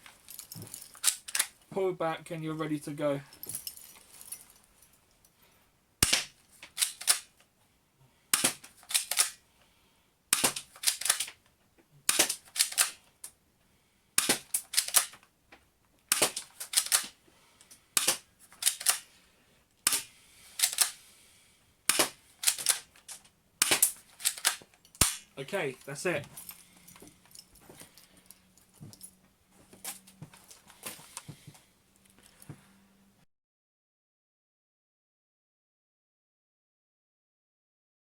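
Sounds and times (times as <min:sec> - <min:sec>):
airsoft pistol shots: 0:06.0 - 0:06.4, 0:10.3 - 0:11.2, 0:21.9 - 0:22.6, 0:23.6 - 0:24.0, 0:25.0 - 0:25.3
pistol slide clacking: 0:06.0 - 0:07.3, 0:08.4 - 0:09.4, 0:10.3 - 0:11.4, 0:12.1 - 0:13.0, 0:14.2 - 0:15.2, 0:16.1 - 0:17.2, 0:18.0 - 0:19.1, 0:19.8 - 0:21.0, 0:21.9 - 0:25.4.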